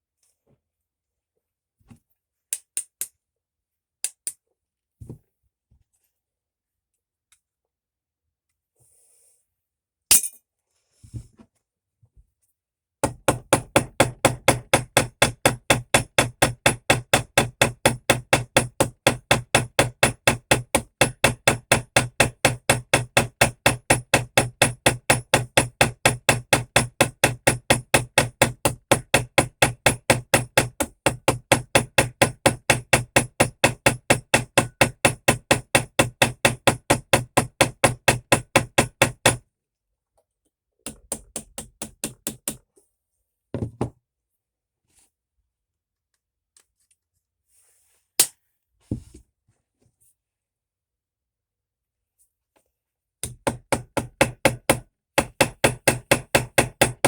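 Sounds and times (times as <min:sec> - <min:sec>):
small hammer tapping metal: 0:13.0 - 0:39.4, 0:40.9 - 0:42.6, 0:53.2 - 0:57.0.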